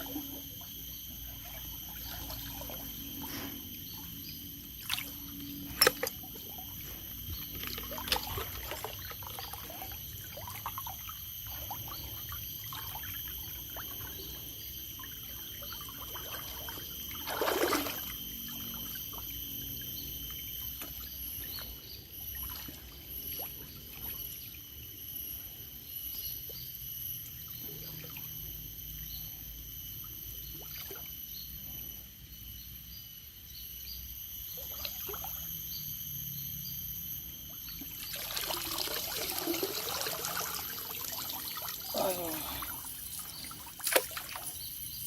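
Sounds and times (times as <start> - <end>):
river water trickling: 0.0 - 24.6, 37.5 - 45.0
small chirps: 40.5 - 45.0.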